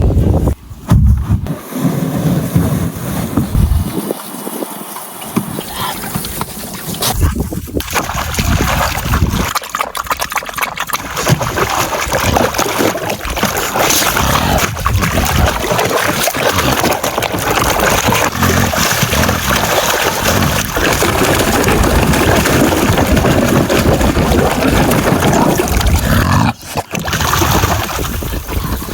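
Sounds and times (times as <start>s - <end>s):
wind buffeting microphone: 0.0s - 1.5s, 2.6s - 4.8s, 7.0s - 9.6s
water rushing around boat: 1.6s - 28.9s.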